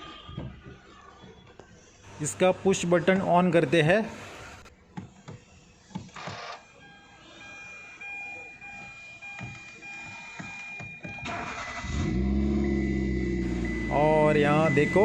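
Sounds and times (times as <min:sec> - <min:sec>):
car engine starting and running: 0:11.2 - 0:15.0.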